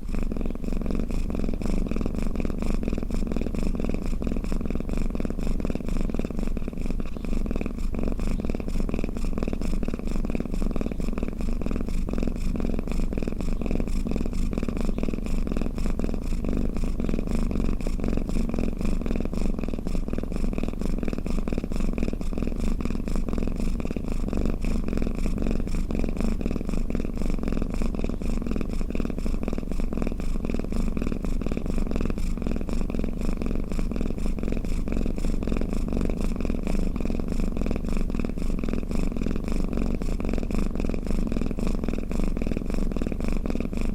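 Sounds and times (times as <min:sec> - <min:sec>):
cat purring: 0:00.0 - 0:43.9.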